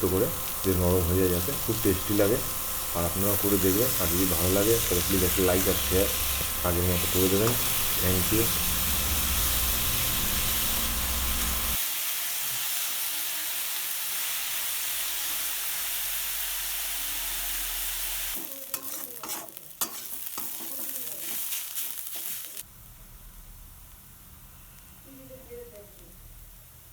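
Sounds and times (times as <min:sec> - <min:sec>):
vegetables sizzling in hot oil: 0:00.0 - 0:26.9
spatula scraping a pan: 0:18.4 - 0:22.6.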